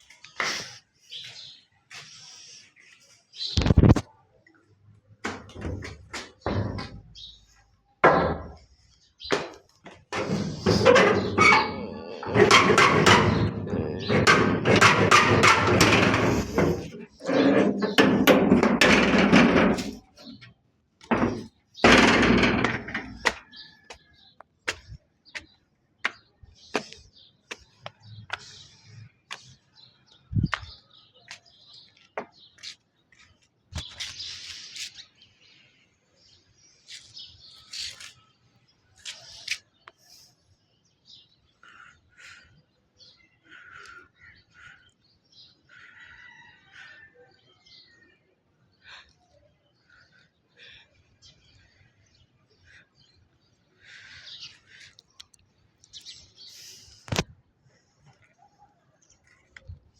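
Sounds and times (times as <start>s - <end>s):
sharp clicks and knocks: 9.3s - 17.0s.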